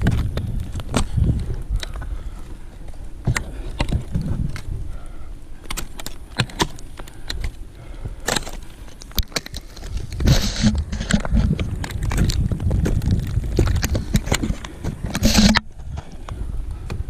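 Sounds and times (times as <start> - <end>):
wind rumble on microphone: 0.0 - 8.3, 9.0 - 17.0
climbing gear clinking: 5.6 - 15.6
handling noise: 5.6 - 16.3.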